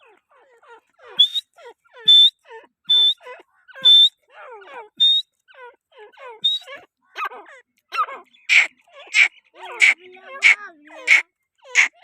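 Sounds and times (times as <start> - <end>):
bird shrill whistled calls: 1.2 - 4.2, 5.0 - 5.3, 6.4 - 6.8.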